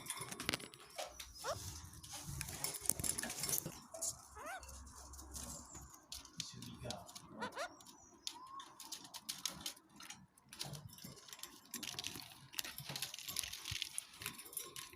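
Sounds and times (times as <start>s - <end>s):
parakeet chirp: 1.2s - 2.0s, 4.2s - 4.7s, 7.0s - 8.6s.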